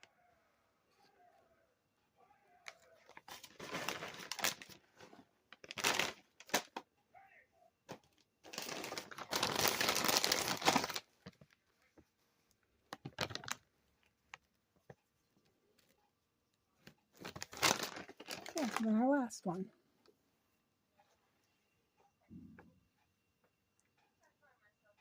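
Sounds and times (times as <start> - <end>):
food packaging crinkling: 2.8 - 6.8, 8.0 - 11.6, 13.0 - 14.4, 17.1 - 19.0.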